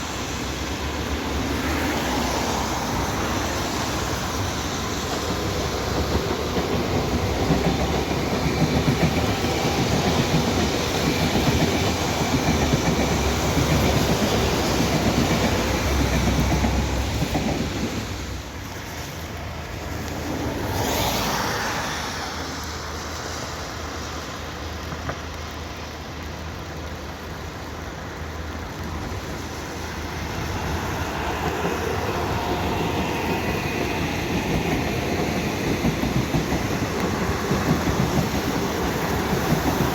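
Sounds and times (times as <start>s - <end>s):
train wheels clattering: 0.0s - 20.2s, 28.3s - 39.9s.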